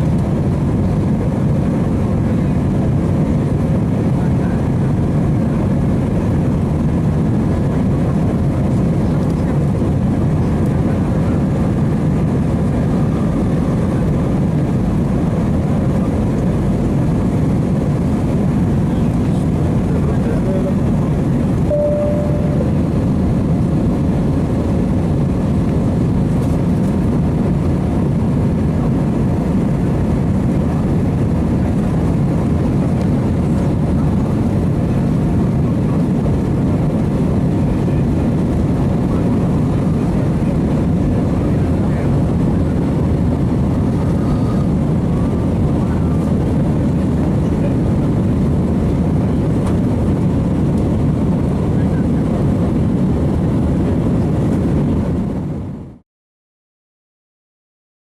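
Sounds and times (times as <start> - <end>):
jet cabin engine rush: 0.0 - 56.0
faint tone: 21.6 - 23.0.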